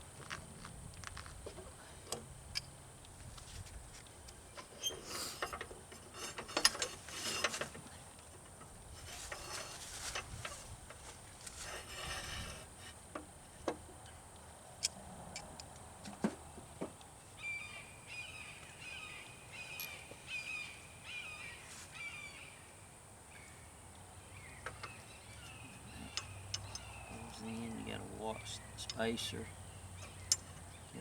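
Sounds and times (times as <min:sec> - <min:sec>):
metal tools clinking and scraping: 0:04.6 - 0:13.0.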